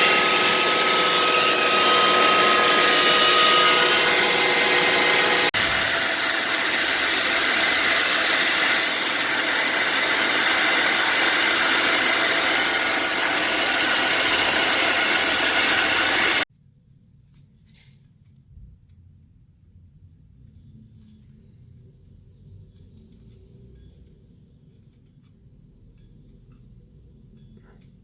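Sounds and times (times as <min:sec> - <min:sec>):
whirring pulley hum: 0:00.0 - 0:16.4.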